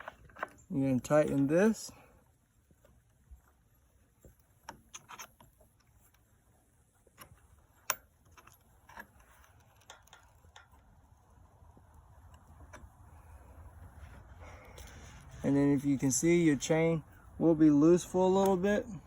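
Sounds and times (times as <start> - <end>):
wrench clicking on metal: 7.8 - 10.9.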